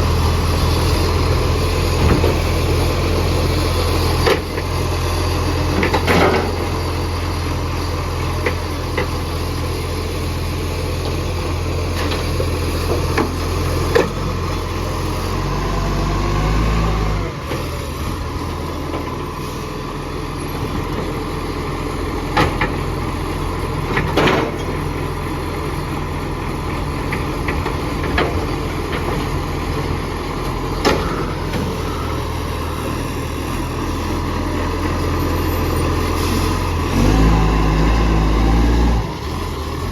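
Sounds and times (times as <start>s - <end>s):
diesel truck engine droning: 0.0s - 39.9s.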